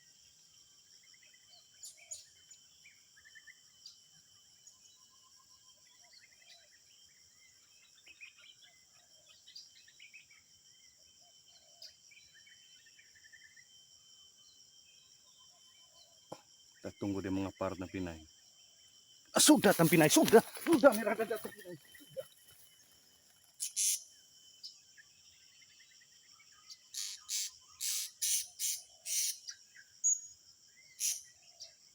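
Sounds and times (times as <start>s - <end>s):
high insect drone: 10.8s - 31.9s
bird chirps and trills: 23.6s - 24.1s, 26.5s - 31.4s.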